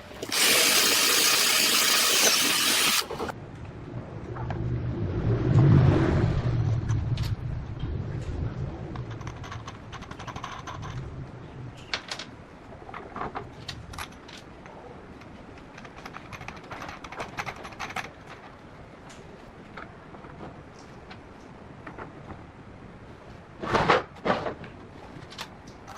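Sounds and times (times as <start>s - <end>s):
angle grinder spinning down: 0.2s - 3.3s.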